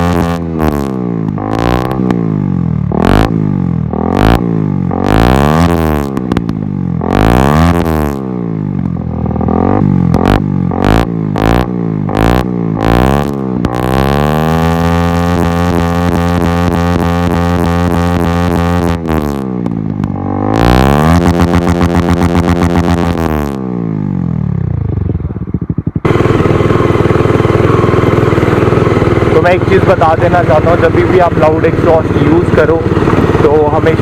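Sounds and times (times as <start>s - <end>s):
exhaust pops: 0.0s - 3.4s, 5.1s - 14.1s, 14.9s - 23.6s
motorcycle engine revving: 0.0s - 34.0s.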